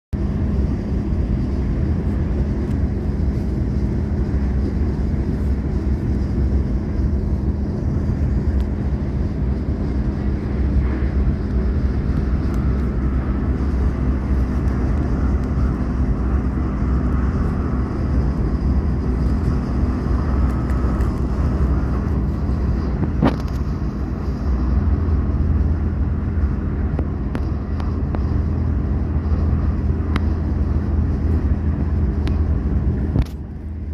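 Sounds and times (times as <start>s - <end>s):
train rumbling: 0.1s - 33.9s
light ticks: 30.1s - 30.4s.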